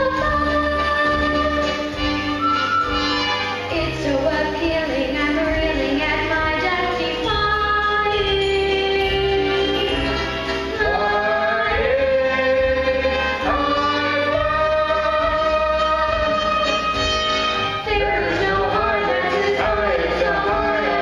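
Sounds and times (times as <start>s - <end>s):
instrumental accompaniment: 0.0s - 21.0s
young people singing: 3.8s - 16.9s, 17.8s - 21.0s.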